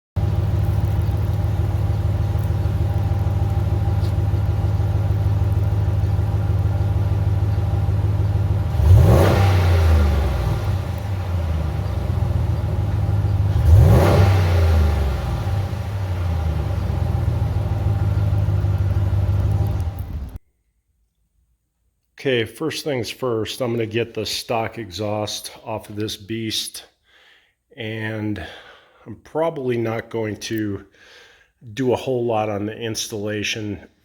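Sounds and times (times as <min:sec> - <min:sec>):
engine revving: 0:00.2 - 0:20.4
pickup truck engine idling: 0:00.2 - 0:20.4.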